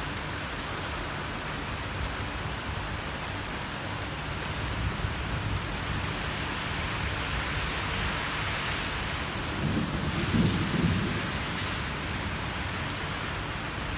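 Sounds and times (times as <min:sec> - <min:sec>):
steady rain: 0:00.0 - 0:13.9
thunder rumble: 0:09.3 - 0:13.0.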